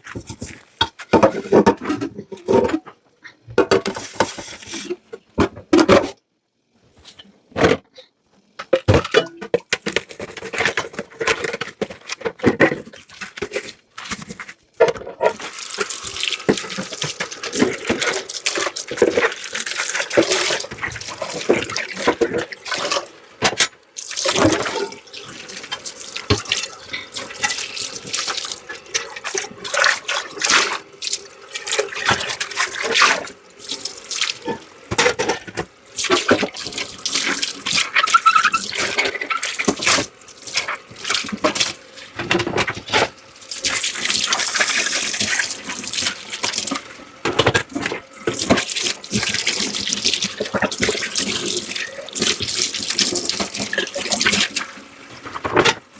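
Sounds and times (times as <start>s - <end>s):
tap water running and splashing: 15.2s - 55.9s.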